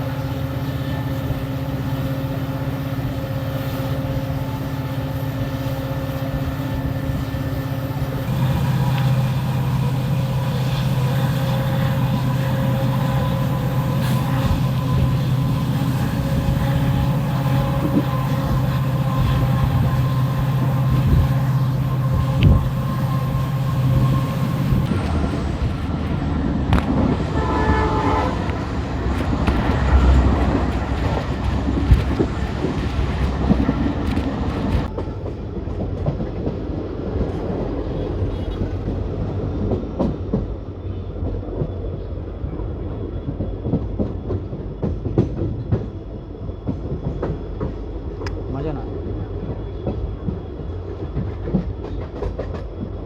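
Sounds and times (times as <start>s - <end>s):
train horn: 0.0s - 25.7s, 26.7s - 31.2s
diesel engine humming: 6.6s - 34.9s
train wheels clattering: 6.8s - 40.6s, 43.2s - 48.5s, 49.4s - 53.0s.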